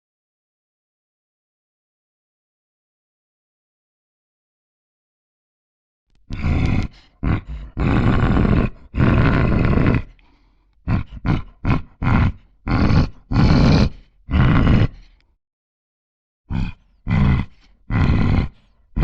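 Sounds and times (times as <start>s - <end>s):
person growling and grunting: 6.2s - 15.3s, 16.5s - 19.0s.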